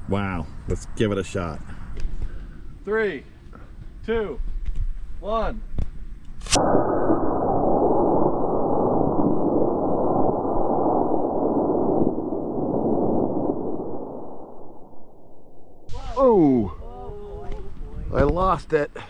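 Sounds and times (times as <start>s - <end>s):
rocket ignition crack: 5.8s - 16.7s
rocket rushing noise: 6.3s - 16.5s.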